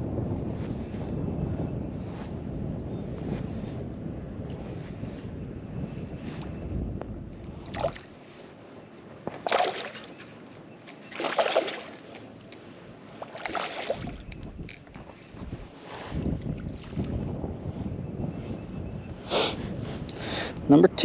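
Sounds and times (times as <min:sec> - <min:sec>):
wind buffeting microphone: 0:00.0 - 0:21.0
water splashes: 0:07.7 - 0:08.2, 0:09.3 - 0:12.3, 0:13.1 - 0:14.3.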